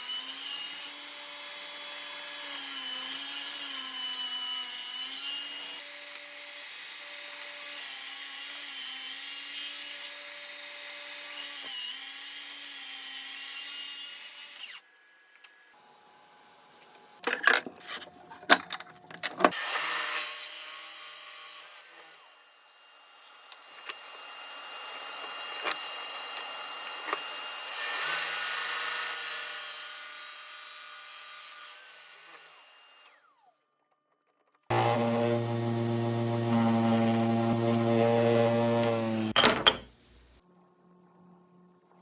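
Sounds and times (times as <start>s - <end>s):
power tool motor humming: 34.7s - 39.4s
tool working wood: 34.7s - 40.2s.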